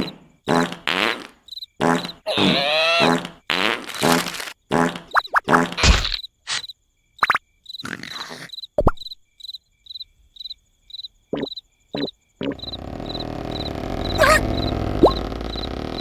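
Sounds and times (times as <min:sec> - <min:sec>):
cricket chirps: 0:00.0 - 0:16.0
loud noise: 0:12.6 - 0:16.0.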